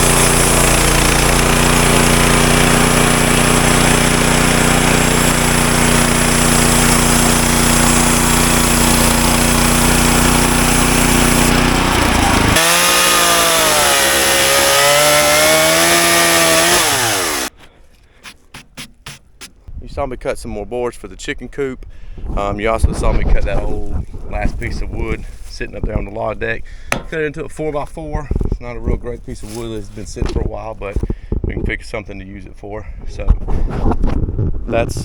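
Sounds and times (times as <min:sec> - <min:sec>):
bandsaw blade sawing log: 0:00.0 - 0:17.5, 0:18.1 - 0:19.6
gas engine running: 0:00.0 - 0:17.5.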